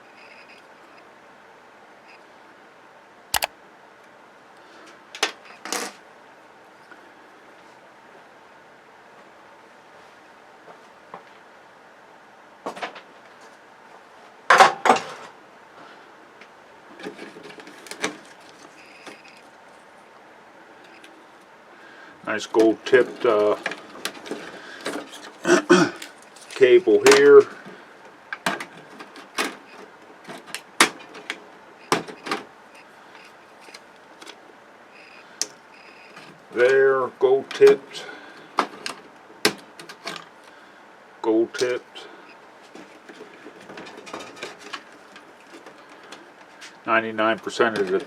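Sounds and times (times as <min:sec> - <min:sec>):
television parts knocking and clattering: 0:42.8 - 0:46.1.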